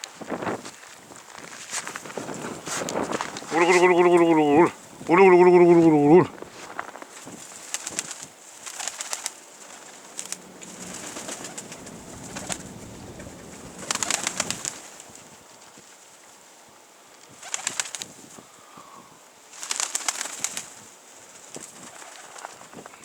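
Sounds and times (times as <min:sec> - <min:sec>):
pigeon wings flapping: 0:02.1 - 0:06.3, 0:07.6 - 0:15.1, 0:17.4 - 0:18.2, 0:19.6 - 0:20.8
faint low pigeon coo: 0:03.4 - 0:06.3.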